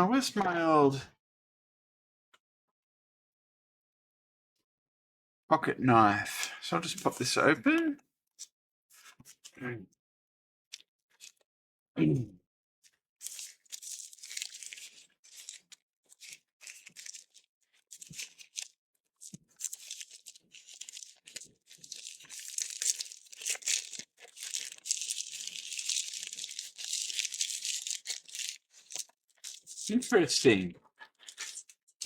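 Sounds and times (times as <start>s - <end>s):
knife slitting packaging: 13.2s - 30.1s, 31.1s - 31.8s
packaging tearing and crinkling: 13.2s - 30.4s, 31.1s - 32.0s.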